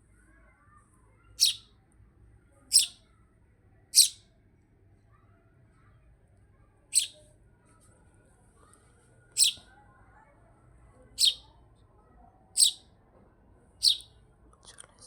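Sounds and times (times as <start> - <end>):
sparrow chirping: 1.4 - 1.7, 2.7 - 3.0, 4.0 - 4.2, 6.9 - 7.2, 9.4 - 9.6, 11.2 - 11.5, 12.6 - 12.8, 13.8 - 14.1.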